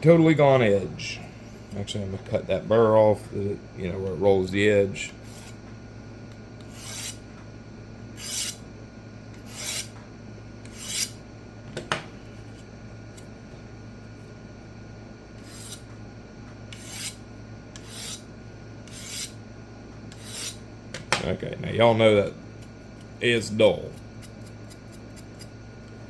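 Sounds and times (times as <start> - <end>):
knife edge rasping strokes: 5.2 - 5.6, 6.6 - 7.2, 8.2 - 8.6, 9.4 - 10.0, 10.6 - 11.2, 15.4 - 15.9, 16.7 - 17.2, 17.8 - 19.4, 20.1 - 20.6, 22.6 - 25.6.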